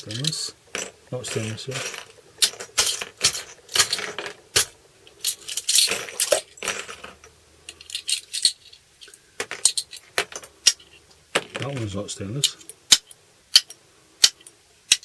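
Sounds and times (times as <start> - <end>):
metal rivets clinking and rattling: 0.0 - 15.0.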